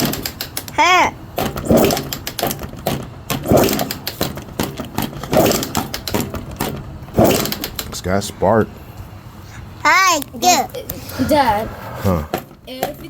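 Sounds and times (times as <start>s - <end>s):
motorcycle being kick-started: 1.6s - 7.9s.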